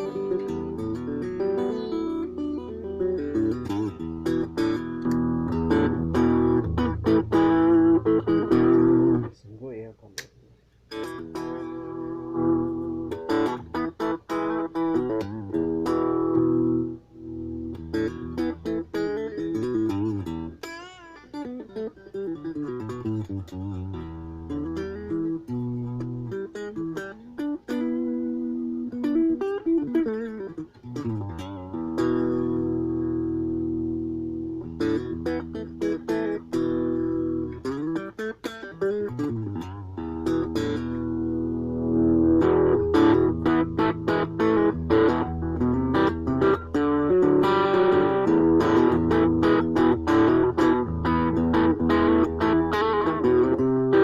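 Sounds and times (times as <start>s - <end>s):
electric guitar notes and chords: 0.0s - 9.3s, 10.9s - 54.0s.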